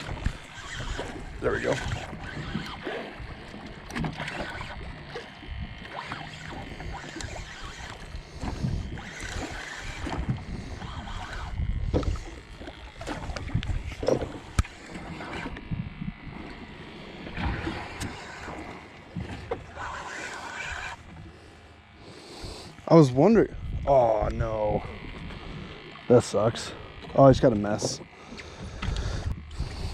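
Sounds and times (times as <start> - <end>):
water noise: 0.0 - 29.9.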